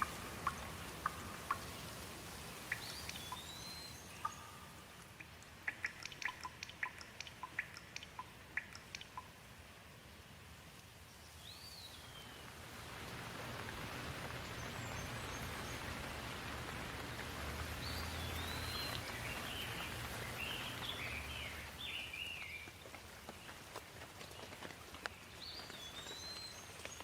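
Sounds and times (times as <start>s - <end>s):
bird chirping: 0.0s - 5.0s, 5.7s - 9.3s, 11.1s - 12.5s, 14.3s - 16.6s, 17.2s - 23.6s, 25.0s - 27.0s
steady rain hiss: 0.0s - 27.0s.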